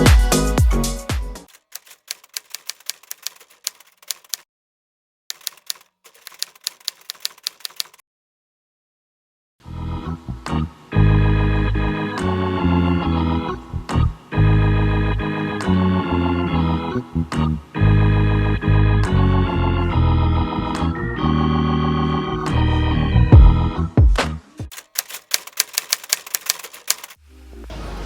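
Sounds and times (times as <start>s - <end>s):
sharp clicks: 1.5s - 4.4s, 5.3s - 8.0s, 24.7s - 27.2s
organ-like keyboard chords: 9.8s - 24.0s.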